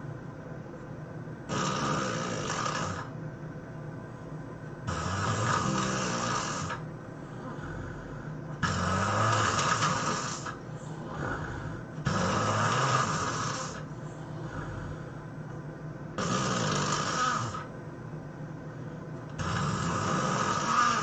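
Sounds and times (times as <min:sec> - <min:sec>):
person snoring loudly: 0:01.5 - 0:03.1, 0:04.9 - 0:06.8, 0:07.4 - 0:15.2, 0:16.2 - 0:17.7, 0:19.4 - 0:21.0
quiet breaths: 0:03.9 - 0:15.7, 0:18.4 - 0:21.0.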